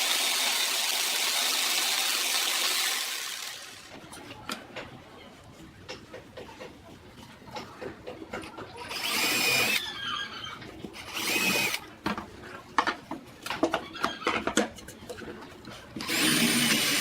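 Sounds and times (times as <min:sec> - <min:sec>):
power tool motor whine: 0:00.0 - 0:03.9, 0:16.0 - 0:17.0.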